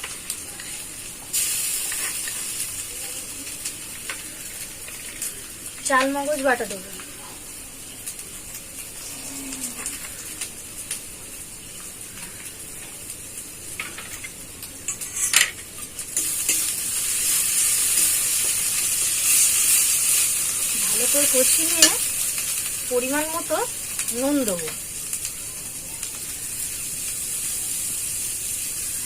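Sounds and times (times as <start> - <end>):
paste sizzling in hot oil: 0.0 - 29.0.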